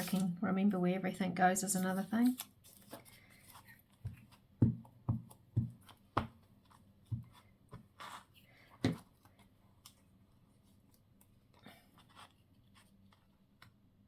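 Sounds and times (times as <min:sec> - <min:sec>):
paper rustling: 0:00.0 - 0:00.3, 0:01.8 - 0:04.4.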